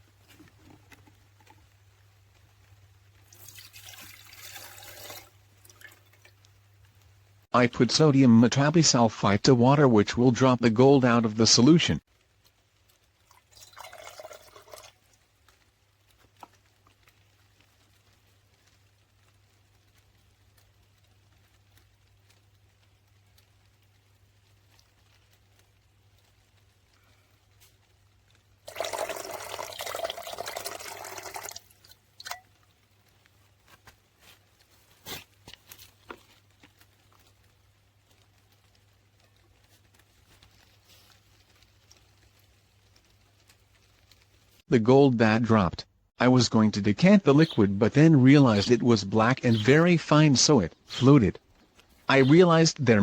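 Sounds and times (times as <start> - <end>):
liquid pouring into container: 3.2 - 6.5, 13.2 - 15.2, 28.6 - 32.6.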